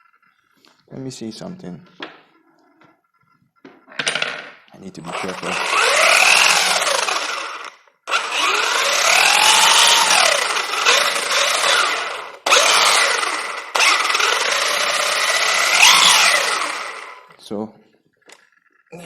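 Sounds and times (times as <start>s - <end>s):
electric motor whine: 5.1s - 17.3s.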